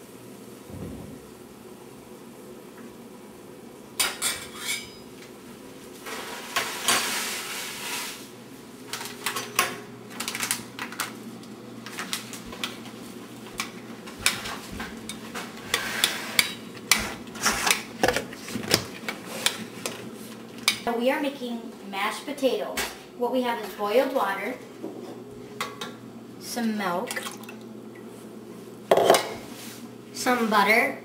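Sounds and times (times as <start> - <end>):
low steady hum: 0.0 - 5.8
dishes and utensils clinking: 4.0 - 5.1, 28.9 - 29.4.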